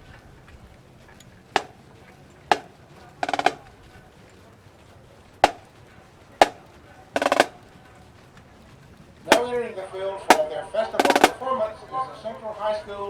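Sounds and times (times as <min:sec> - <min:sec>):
snare drum roll: 0:01.6 - 0:01.8, 0:02.5 - 0:03.7, 0:05.4 - 0:05.7, 0:06.4 - 0:07.6, 0:09.3 - 0:09.6, 0:10.3 - 0:11.4
snare drum strokes: 0:01.6 - 0:01.8, 0:02.5 - 0:03.7, 0:05.4 - 0:05.7, 0:06.4 - 0:07.6, 0:09.3 - 0:09.7, 0:10.3 - 0:11.4.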